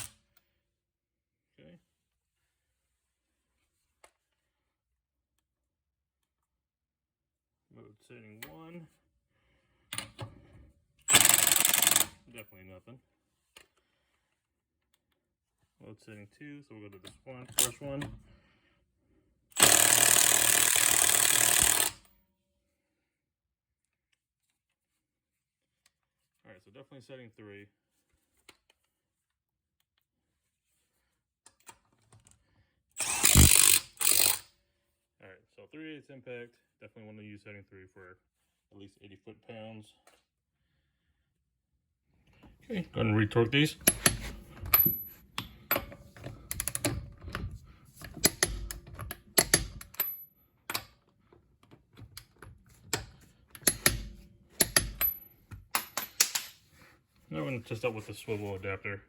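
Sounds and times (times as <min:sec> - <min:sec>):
impact wrench hammering on a nut: 0:11.1 - 0:12.1, 0:19.6 - 0:22.0, 0:33.0 - 0:34.4, 0:43.8 - 0:45.9, 0:48.1 - 0:50.8, 0:52.9 - 0:56.5.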